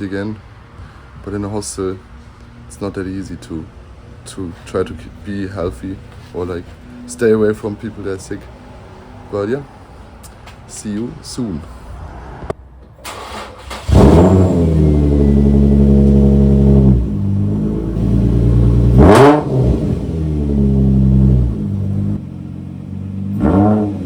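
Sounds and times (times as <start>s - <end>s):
car engine revving: 13.1s - 24.0s.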